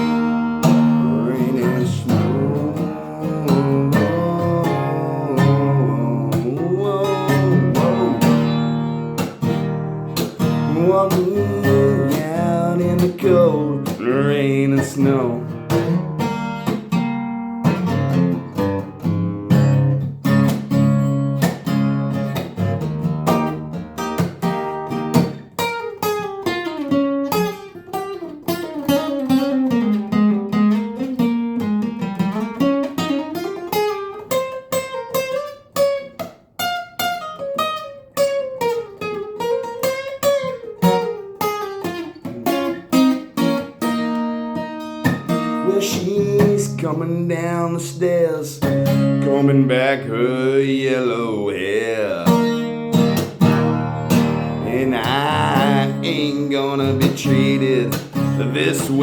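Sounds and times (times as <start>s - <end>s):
acoustic guitar playing: 0.0s - 59.0s.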